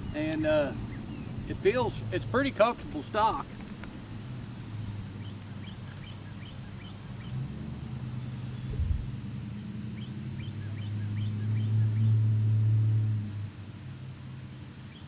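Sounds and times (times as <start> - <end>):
bird chirping: 0.0 - 1.3, 3.2 - 9.1, 10.0 - 12.2, 14.4 - 15.0
steady low hum: 0.0 - 15.0.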